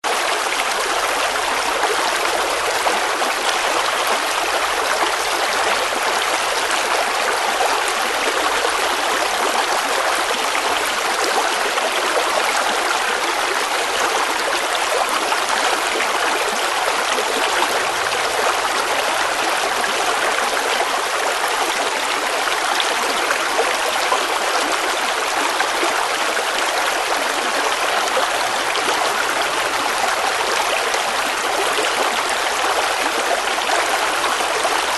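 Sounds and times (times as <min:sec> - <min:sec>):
river water babbling over stones: 0:00.0 - 0:34.9.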